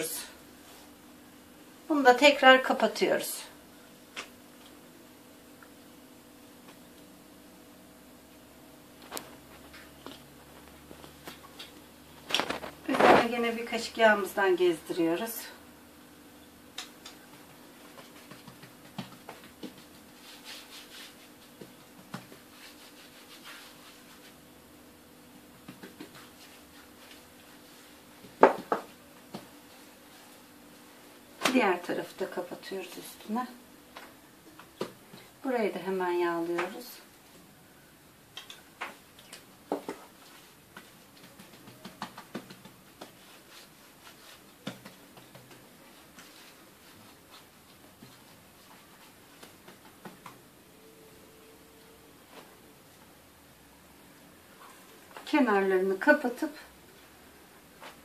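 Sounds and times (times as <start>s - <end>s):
faint steady hum: 0.0s - 58.0s
spoon and hands tapping dough: 16.7s - 19.9s, 40.7s - 43.3s, 44.6s - 46.2s
hands rubbing and tapping dough: 16.7s - 24.4s, 25.5s - 29.8s, 38.4s - 50.5s.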